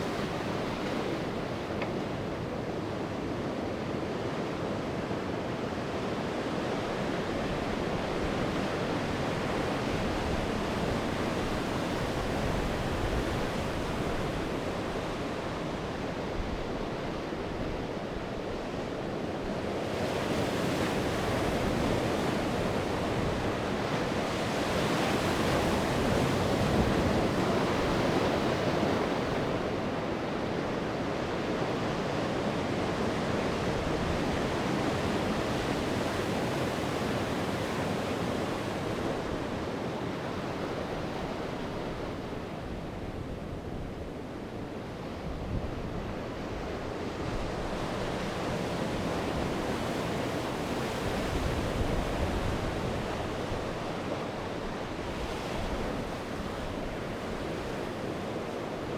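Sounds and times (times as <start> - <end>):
sea waves breaking on shore: 0.0 - 58.9.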